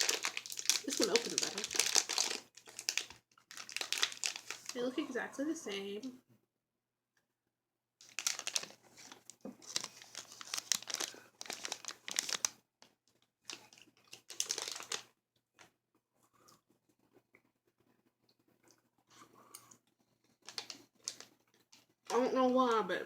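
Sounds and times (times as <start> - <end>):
plastic bag crinkling: 0.0 - 5.0, 8.0 - 15.7, 20.4 - 22.7.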